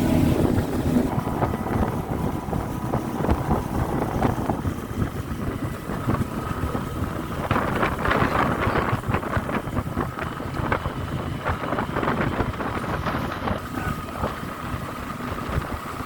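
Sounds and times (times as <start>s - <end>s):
engine hum: 0.0s - 16.0s
wind buffeting microphone: 0.0s - 16.0s.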